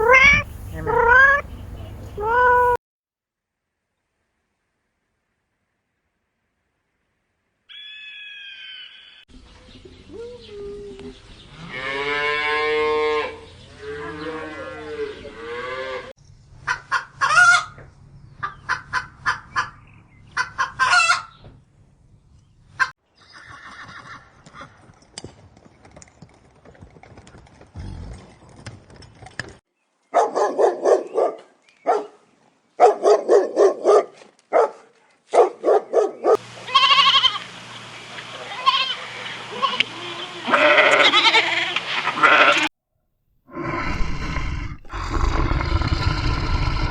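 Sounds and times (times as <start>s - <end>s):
chicken calls: 0.0s - 2.8s, 16.6s - 21.4s
farm animal calls: 0.0s - 2.8s, 10.0s - 21.4s, 35.7s - 42.7s.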